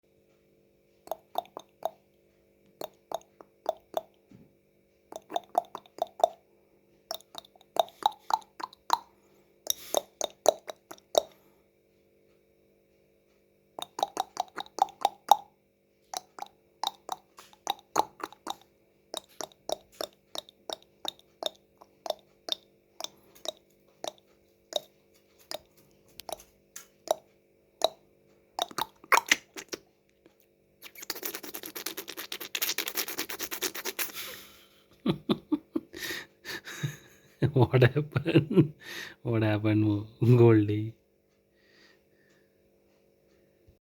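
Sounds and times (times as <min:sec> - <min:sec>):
faint steady hum: 0:00.1 - 0:43.8
tongue clicks and pops: 0:01.1 - 0:02.0, 0:02.7 - 0:04.3, 0:05.1 - 0:06.4, 0:07.1 - 0:11.4, 0:13.8 - 0:15.5, 0:16.1 - 0:28.0, 0:28.6 - 0:34.4.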